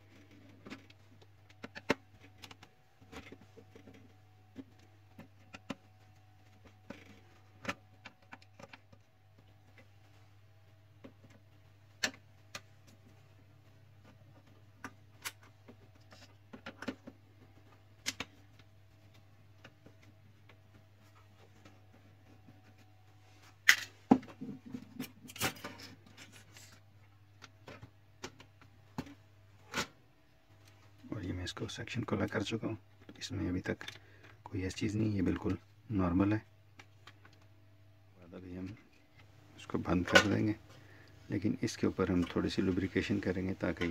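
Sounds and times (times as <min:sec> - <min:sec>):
plastic parts clicking and clattering: 0:00.0 - 0:10.0, 0:11.0 - 0:22.9, 0:23.6 - 0:30.0, 0:33.0 - 0:34.4.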